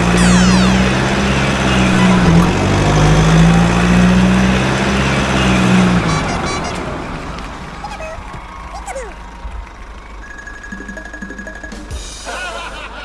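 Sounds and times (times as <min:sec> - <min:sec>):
falling whistle-like glide: 0:00.0 - 0:01.1
fast high-pitched pulsing: 0:00.0 - 0:03.0
vehicle engine humming: 0:00.0 - 0:10.2.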